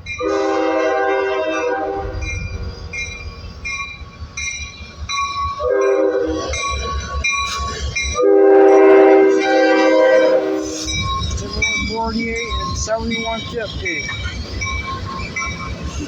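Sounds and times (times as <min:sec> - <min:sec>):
passing train rumble: 0:00.0 - 0:16.0
locomotive air horn: 0:00.2 - 0:02.2, 0:05.6 - 0:06.6, 0:08.2 - 0:10.9.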